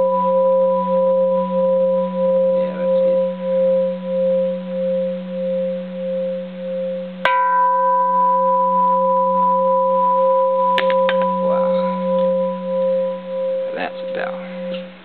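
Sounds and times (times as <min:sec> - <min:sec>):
bell struck with hammer: 0:07.2 - 0:15.0
large temple bell ringing: 0:07.2 - 0:15.0.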